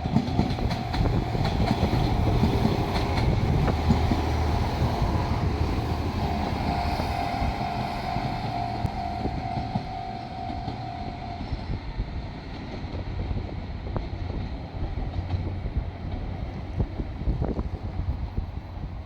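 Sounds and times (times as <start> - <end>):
diesel railcar engine rumble: 0.0 - 19.0
crossing alarm repeating tone: 4.4 - 11.8.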